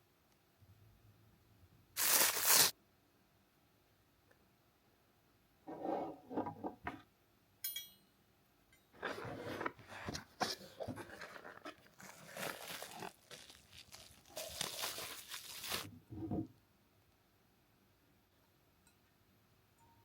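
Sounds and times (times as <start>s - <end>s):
packaging rustling and crinkling: 2.0s - 2.7s, 9.0s - 15.9s
short ringing clink: 7.6s - 8.1s.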